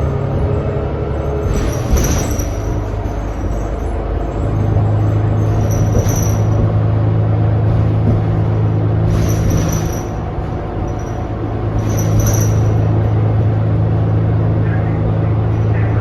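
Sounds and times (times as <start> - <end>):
bus engine low drone: 0.0 - 16.0.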